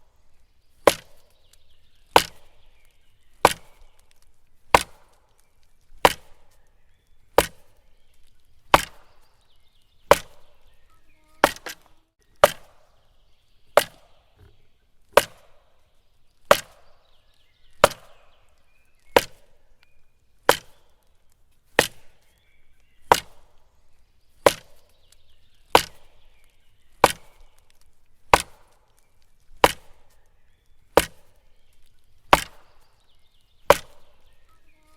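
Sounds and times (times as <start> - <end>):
wooden knocks on tree trunk: 7.4 - 7.7, 10.1 - 10.5, 11.4 - 12.8, 13.8 - 15.6, 31.0 - 31.2, 32.3 - 32.8.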